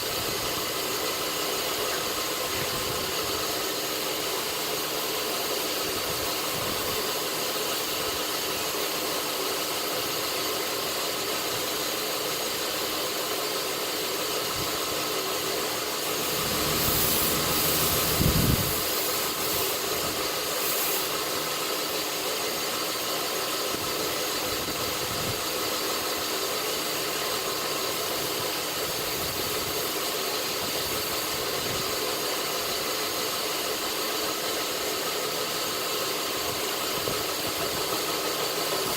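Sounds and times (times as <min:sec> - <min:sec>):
belt grinder running: 0:15.8 - 0:21.4
short high-pitched bursts: 0:16.0 - 0:19.9.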